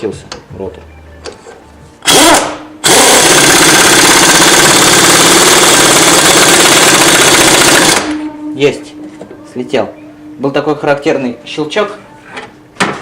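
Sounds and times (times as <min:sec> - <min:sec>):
pneumatic impact wrench hammering: 0:02.0 - 0:08.2.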